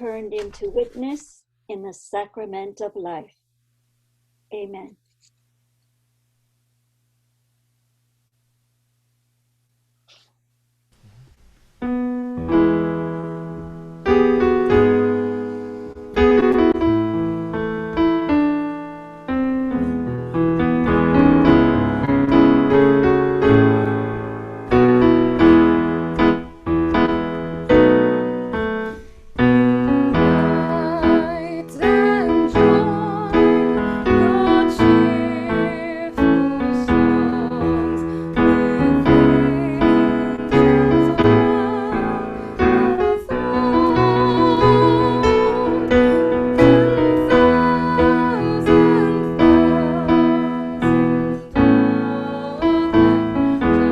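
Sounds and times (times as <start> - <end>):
slow piano chords: 11.0 - 53.9.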